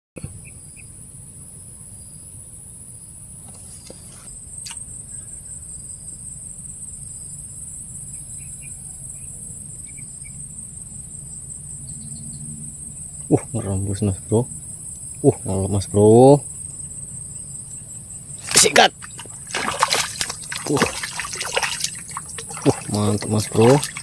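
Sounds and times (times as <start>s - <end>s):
crickets chirping: 0.2s - 24.0s.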